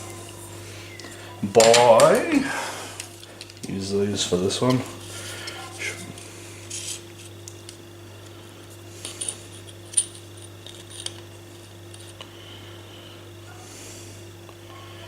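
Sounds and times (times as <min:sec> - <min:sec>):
faint steady hum: 0:00.0 - 0:15.0.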